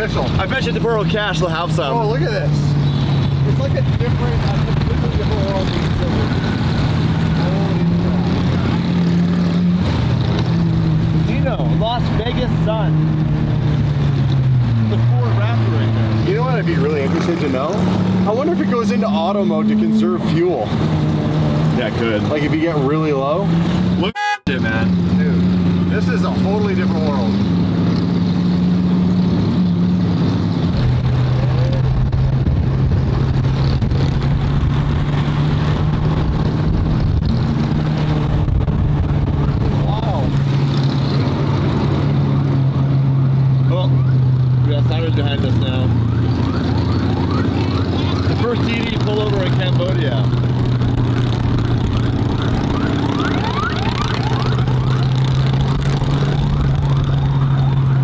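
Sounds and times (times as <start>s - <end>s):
car engine droning: 0.0s - 58.0s
police siren yelping: 24.1s - 24.5s, 45.4s - 49.1s, 51.1s - 58.0s.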